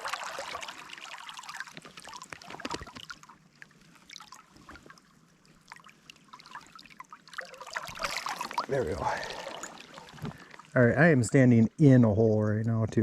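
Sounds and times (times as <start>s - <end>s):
water splashing from wading: 0.0s - 10.8s.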